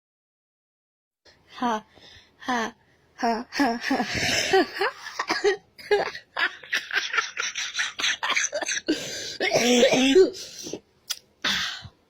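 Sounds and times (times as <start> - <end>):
person laughing: 3.5 - 9.2.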